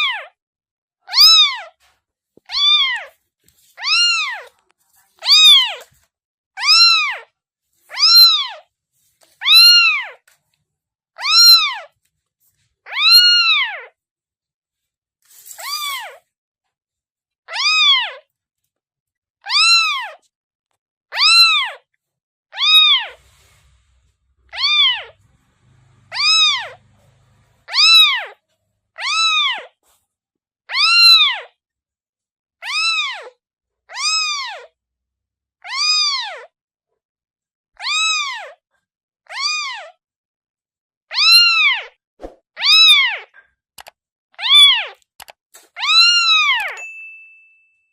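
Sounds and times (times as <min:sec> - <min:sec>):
kitten meowing: 0:01.1 - 0:01.7, 0:02.5 - 0:03.1, 0:03.8 - 0:04.6, 0:05.2 - 0:05.9, 0:06.6 - 0:07.3, 0:07.9 - 0:08.6, 0:09.4 - 0:10.2, 0:11.2 - 0:11.9, 0:12.9 - 0:13.9, 0:17.5 - 0:18.2, 0:19.5 - 0:20.2, 0:21.1 - 0:21.8, 0:22.6 - 0:23.2, 0:24.5 - 0:25.2, 0:26.1 - 0:26.8, 0:27.7 - 0:28.4, 0:29.0 - 0:29.7, 0:30.7 - 0:31.5, 0:32.6 - 0:33.3, 0:33.9 - 0:34.7, 0:37.8 - 0:38.6, 0:39.3 - 0:39.9, 0:41.1 - 0:41.9, 0:42.6 - 0:43.4, 0:44.4 - 0:45.0, 0:45.8 - 0:46.8.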